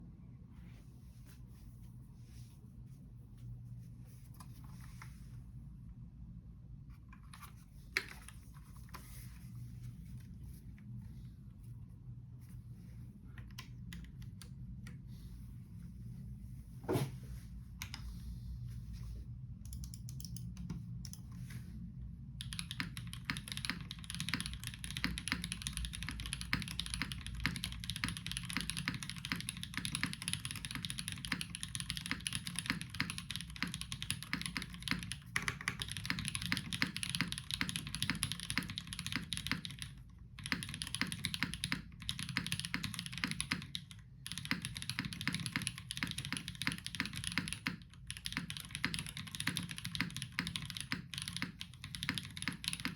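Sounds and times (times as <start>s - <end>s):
mechanical keyboard typing: 19.6s - 21.4s, 22.4s - 52.9s.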